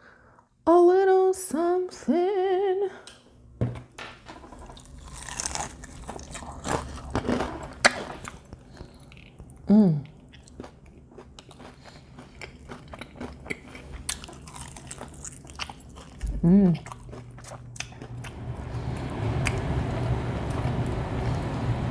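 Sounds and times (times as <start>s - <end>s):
crunching bites and chewing: 4.3s - 18.4s
falling-pitch hum: 18.0s - 21.9s.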